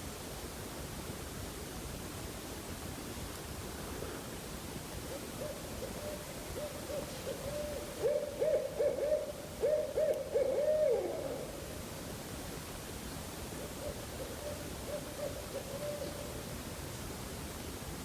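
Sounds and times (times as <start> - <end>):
steady outdoor hiss: 0.0 - 18.0
owl hooting: 5.1 - 11.6, 13.6 - 16.4.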